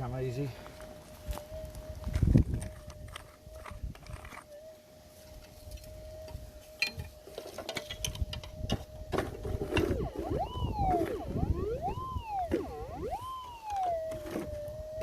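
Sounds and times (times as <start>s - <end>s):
metal detector swooping tones: 1.1s - 15.0s
metal detector threshold hum: 8.0s - 15.0s
digging knocks and scrapes: 13.7s - 14.8s.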